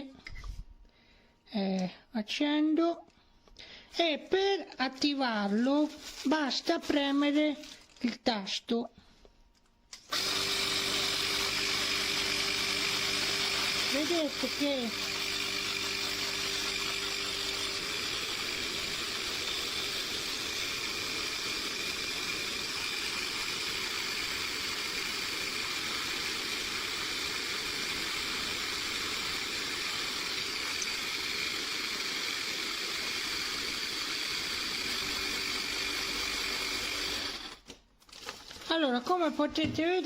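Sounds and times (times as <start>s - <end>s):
air compressor running: 10.0s - 37.6s.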